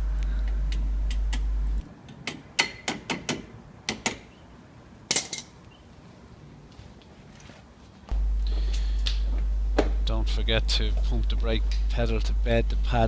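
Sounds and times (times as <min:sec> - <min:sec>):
steady low hum: 0:00.0 - 0:02.0, 0:08.0 - 0:13.0.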